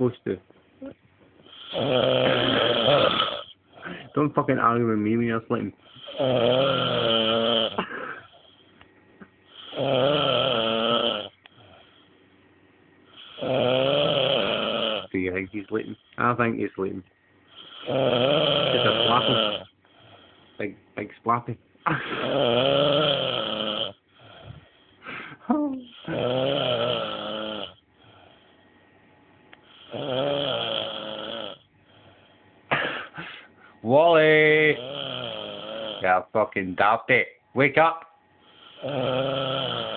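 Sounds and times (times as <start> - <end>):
man snoring loudly: 1.5 - 3.6, 5.8 - 8.6, 9.5 - 11.9, 13.1 - 16.0, 17.5 - 20.6, 21.9 - 24.6, 25.8 - 28.4, 29.7 - 32.2, 34.1 - 36.2, 38.4 - 39.9
quiet breaths: 2.8 - 4.5, 5.6 - 7.0, 7.7 - 10.2, 11.2 - 21.0, 23.9 - 30.1, 30.9 - 33.9, 38.3 - 39.9.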